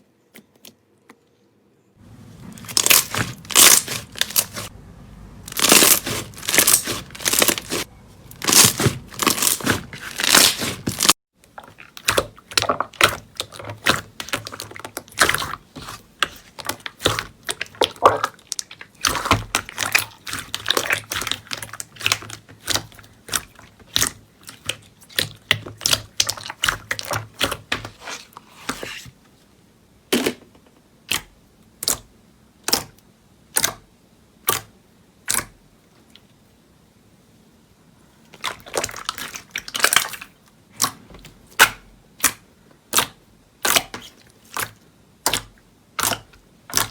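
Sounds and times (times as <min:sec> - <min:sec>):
slime crackling and popping: 0:02.6 - 0:04.7, 0:05.5 - 0:11.2, 0:45.2 - 0:46.9.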